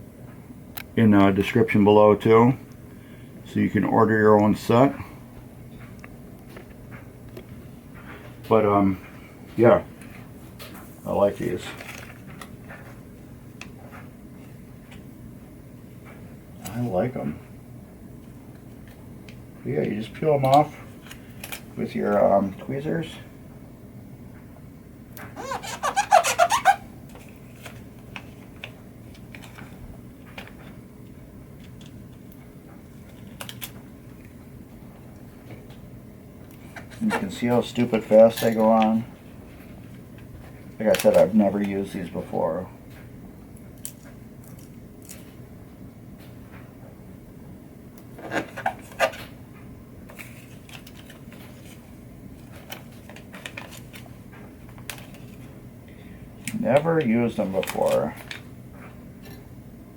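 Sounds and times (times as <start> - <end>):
steady low hum: 0.0 - 59.9
squeaks on glossy surface: 25.4 - 26.8.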